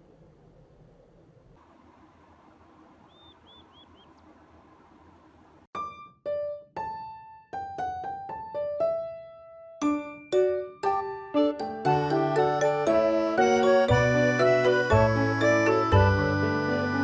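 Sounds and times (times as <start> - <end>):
piano-like keyboard melody: 5.7 - 17.0.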